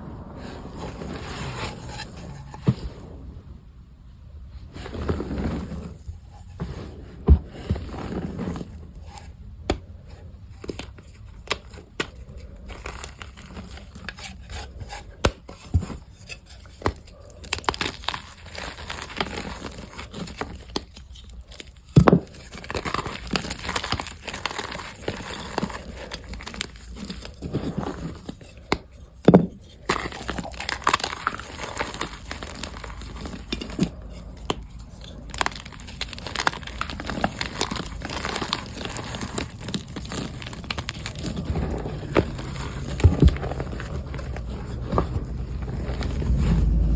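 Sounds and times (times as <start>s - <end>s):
chalk blocks crushed by hand: 10.6s - 46.3s.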